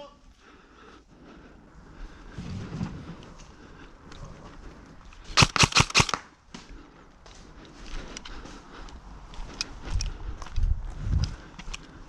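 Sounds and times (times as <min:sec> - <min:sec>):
airsoft gun shots: 0:05.4 - 0:06.3.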